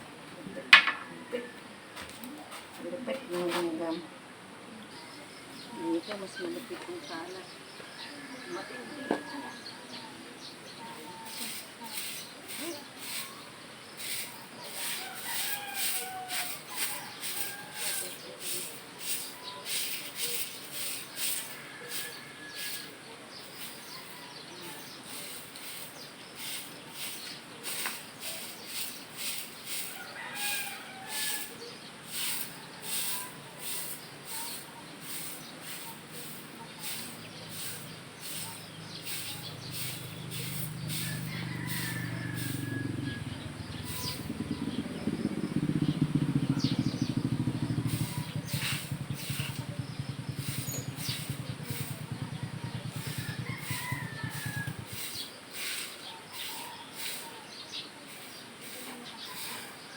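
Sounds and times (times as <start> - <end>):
broom sweeping strokes: 10.8 - 24.2, 24.8 - 45.0, 47.0 - 59.9
bird calls: 35.4 - 57.9
low engine rumble: 37.0 - 55.0.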